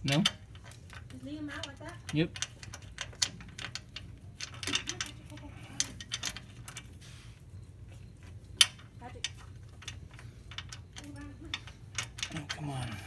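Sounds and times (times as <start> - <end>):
metal tools clinking: 0.0 - 6.9, 8.6 - 13.0.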